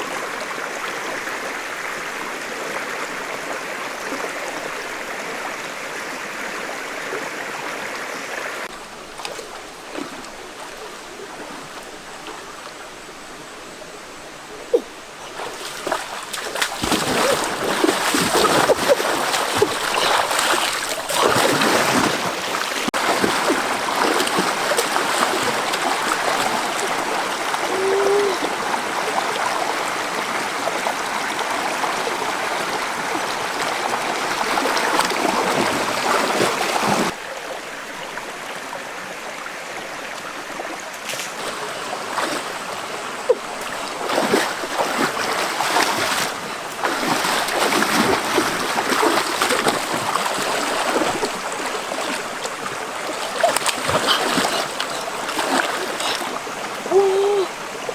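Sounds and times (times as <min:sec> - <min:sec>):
water running in stream: 0:00.0 - 0:57.9.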